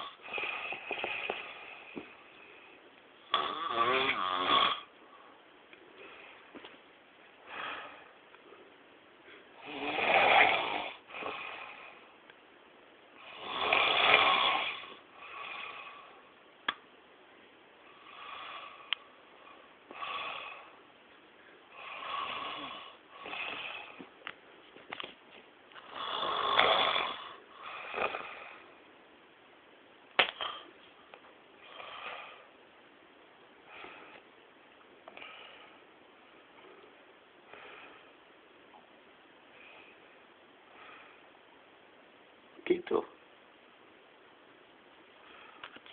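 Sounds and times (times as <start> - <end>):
man snoring heavily: 0.0 - 1.9, 3.3 - 4.9, 9.6 - 12.0, 13.2 - 16.2, 18.0 - 18.9, 19.9 - 20.8, 21.8 - 24.0, 25.9 - 28.6.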